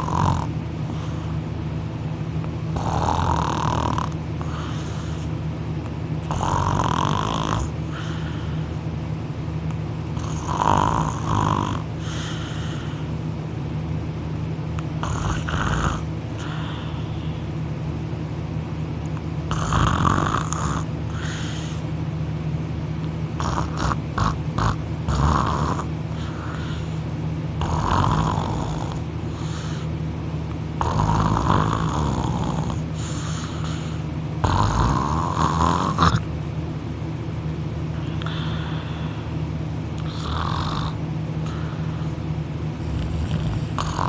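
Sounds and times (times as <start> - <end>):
man snoring loudly: 0.0 - 1.2, 2.7 - 5.3, 6.2 - 8.7, 10.2 - 13.1, 15.0 - 17.4, 19.5 - 21.8, 23.4 - 27.0, 27.6 - 29.9, 30.8 - 36.3, 38.0 - 39.3, 40.0 - 42.1, 42.8 - 44.0.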